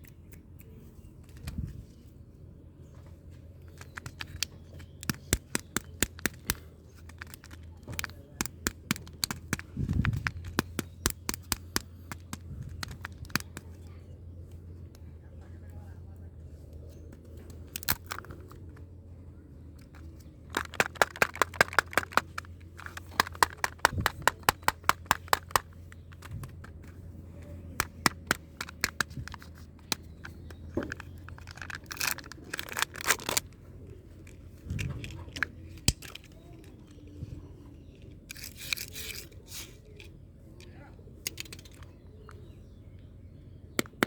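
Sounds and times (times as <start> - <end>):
crunching chocolate candies: 3.7 - 14.0, 17.4 - 18.8, 19.8 - 37.0.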